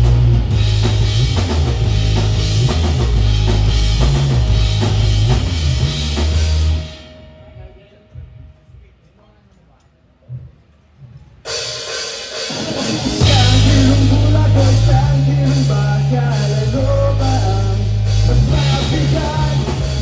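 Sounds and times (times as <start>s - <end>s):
bass guitar: 0.0s - 7.7s, 12.5s - 20.0s
electric guitars: 0.0s - 8.3s, 12.4s - 20.0s
drums: 0.0s - 20.0s
cymbals: 11.4s - 20.0s.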